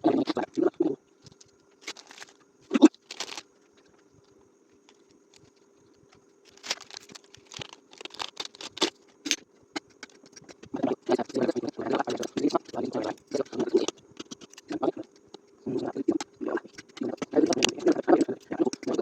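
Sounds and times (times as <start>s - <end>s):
faint steady hum: 0.0s - 19.0s
noodle packet crinkling and scraping: 1.3s - 3.9s, 6.5s - 14.7s.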